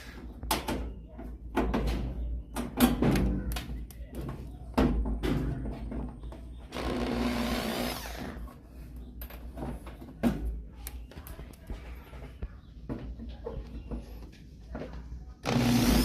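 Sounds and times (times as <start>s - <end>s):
power drill running: 6.7s - 8.3s, 15.4s - 16.0s.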